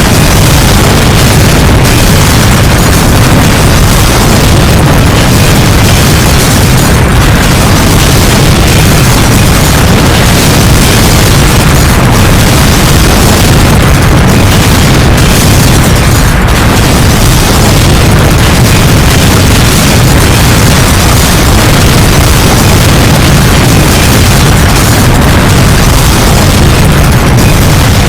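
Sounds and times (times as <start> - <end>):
sustained explosion rumble: 0.0 - 28.0.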